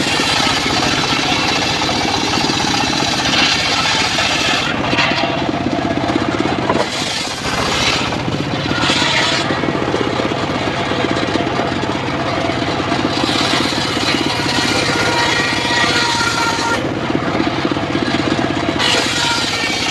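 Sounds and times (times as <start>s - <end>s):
saw blade ripping timber: 0.0s - 5.5s, 6.6s - 9.7s, 13.0s - 16.8s, 18.8s - 19.9s
sawmill engine pulsing: 0.0s - 19.9s.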